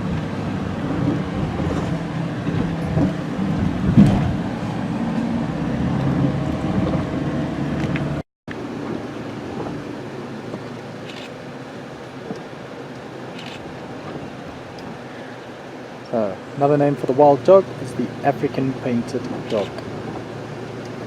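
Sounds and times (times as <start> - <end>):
road and wind noise: 0.0 - 21.0
car engine humming: 9.6 - 21.0.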